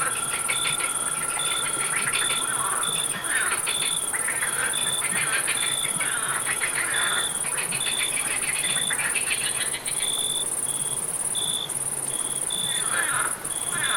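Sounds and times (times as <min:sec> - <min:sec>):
high-pitched insect trill: 0:00.0 - 0:13.9
pulsing frog calls: 0:00.0 - 0:13.9
short cricket chirps: 0:00.0 - 0:13.9.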